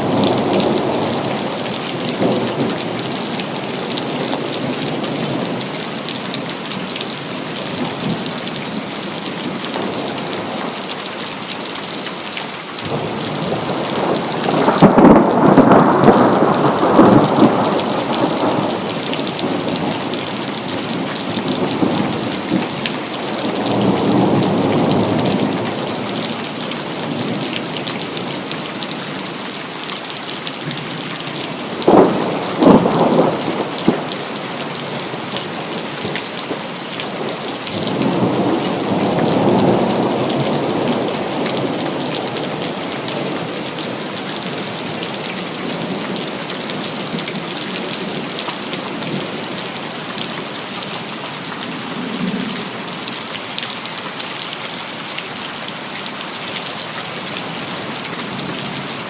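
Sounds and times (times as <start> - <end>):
steady rain: 0.0 - 59.0
rolling thunder: 12.9 - 20.2, 31.6 - 34.9.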